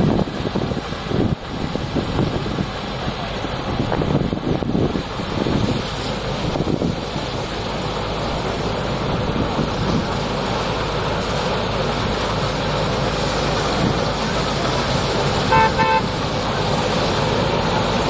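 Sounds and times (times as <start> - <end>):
combine harvester running: 0.0 - 18.0
vehicle horn toots: 15.5 - 16.1.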